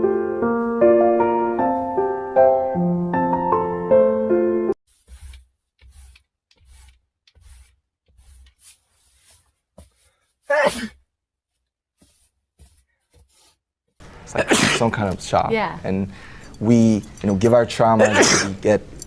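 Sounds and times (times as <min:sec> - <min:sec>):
piano notes: 0:00.0 - 0:04.8
person sneezing: 0:10.4 - 0:11.0, 0:14.4 - 0:14.9, 0:18.0 - 0:18.6.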